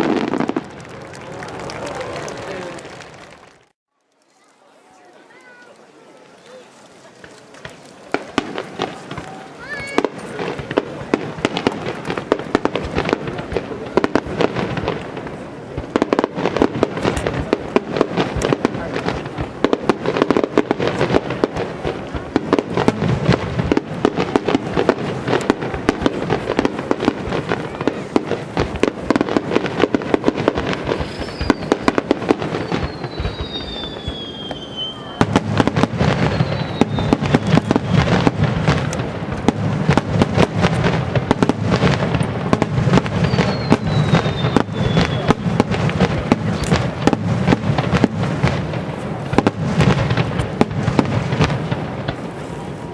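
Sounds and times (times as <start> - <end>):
firework shells bursting: 7.1 - 52.4
firework whistles falling in pitch: 30.9 - 38.2, 43.0 - 45.6.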